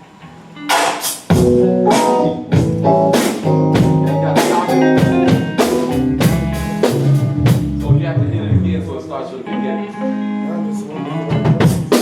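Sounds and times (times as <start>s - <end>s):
guitar playing: 0.0s - 12.0s
drum kit beat: 0.4s - 9.0s, 11.0s - 12.0s.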